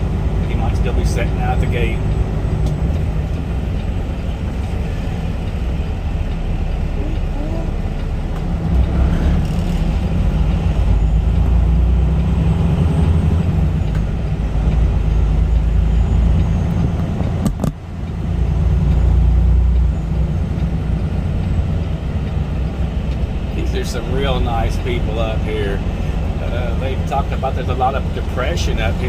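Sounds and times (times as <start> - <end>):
truck engine rumble: 0.0 - 29.0.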